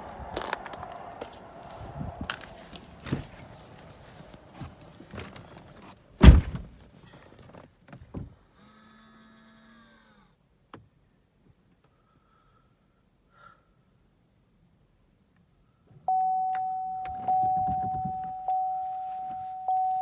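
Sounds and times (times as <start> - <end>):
car door shutting: 1.2 - 8.4, 17.1 - 18.7
knocks and handling sounds: 2.3 - 8.3.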